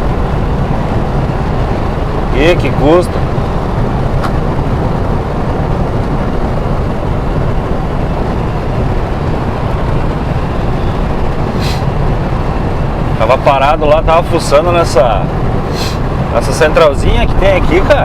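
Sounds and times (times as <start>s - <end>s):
road and engine noise in cabin: 0.0s - 18.0s
brief hiss: 11.6s - 11.9s, 15.7s - 16.0s.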